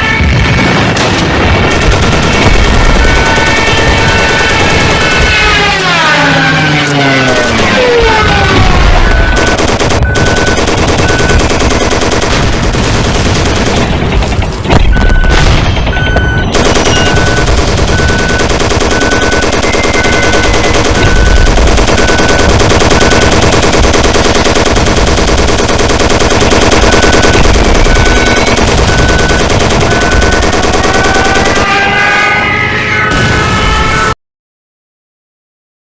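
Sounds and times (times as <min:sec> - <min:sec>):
rapid gunfire crackle: 0:00.5 - 0:06.0, 0:06.8 - 0:31.7
siren gliding: 0:02.4 - 0:11.7, 0:26.8 - 0:34.1.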